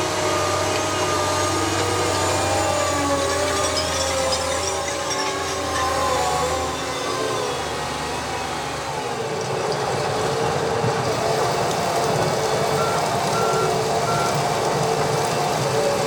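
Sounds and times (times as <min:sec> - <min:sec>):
diesel engine running: 0:00.0 - 0:16.0
reversing alarm beeping: 0:12.6 - 0:14.7.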